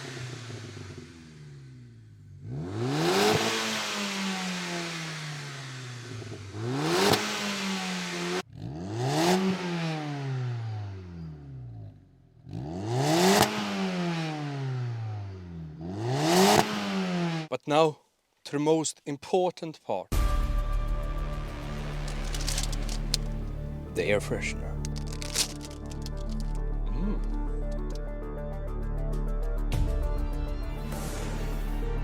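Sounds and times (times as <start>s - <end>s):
car engine revving: 0.0s - 11.7s, 12.4s - 17.5s, 21.5s - 27.9s.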